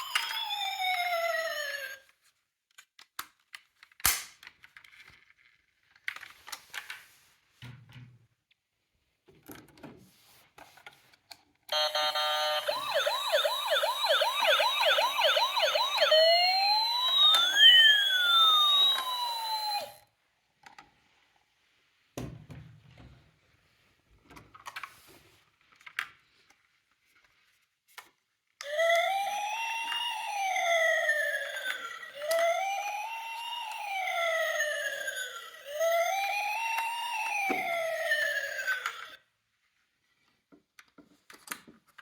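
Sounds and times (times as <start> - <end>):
toy cars clicking and knocking: 0.0 - 0.6, 2.7 - 7.1, 17.0 - 19.9, 36.7 - 39.2, 40.5 - 42.0
toy electronic siren: 0.0 - 2.1, 11.7 - 20.0, 28.6 - 39.2.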